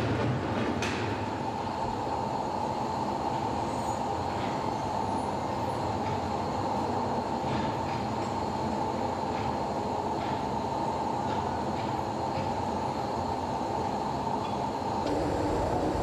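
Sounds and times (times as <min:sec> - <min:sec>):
foundry machinery running: 0:01.5 - 0:16.0.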